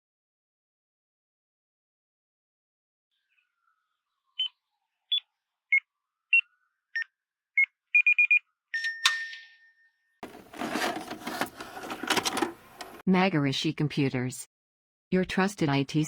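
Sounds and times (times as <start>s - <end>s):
short electronic beeps: 8.0s - 9.5s.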